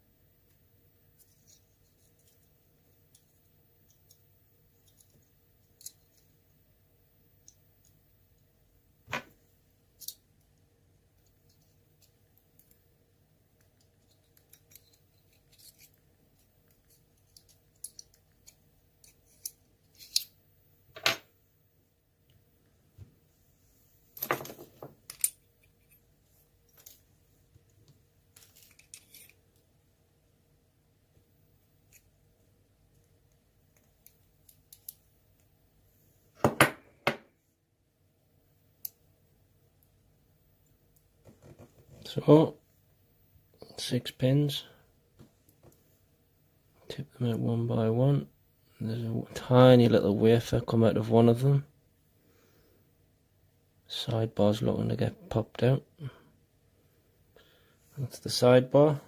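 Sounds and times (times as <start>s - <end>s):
metallic clicks of lock parts: 13.7s - 20.4s, 25.0s - 26.0s.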